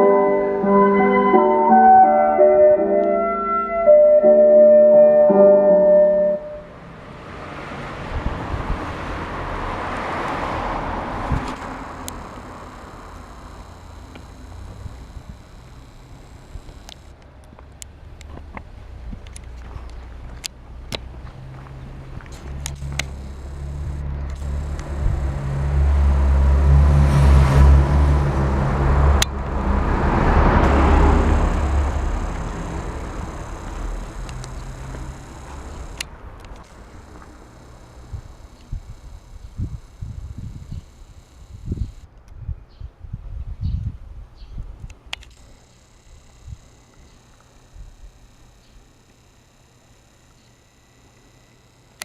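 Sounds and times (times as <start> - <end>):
vehicle passing by: 0.0 - 42.1
low rumble: 20.7 - 36.0.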